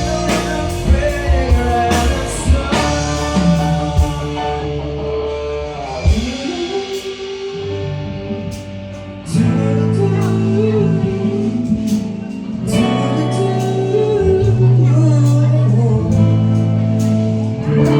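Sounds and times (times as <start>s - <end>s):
guitar chords: 0.0s - 17.9s
person singing: 0.0s - 17.9s.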